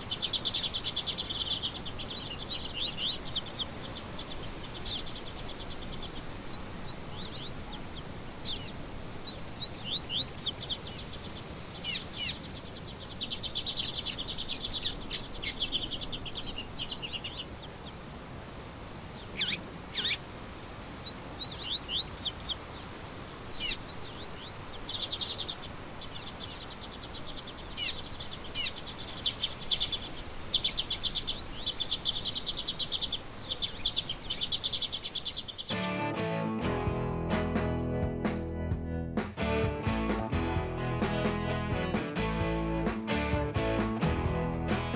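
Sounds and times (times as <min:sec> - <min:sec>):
faint background hiss: 0:00.0 - 0:35.9
songbirds chirping and trilling: 0:00.0 - 0:36.1.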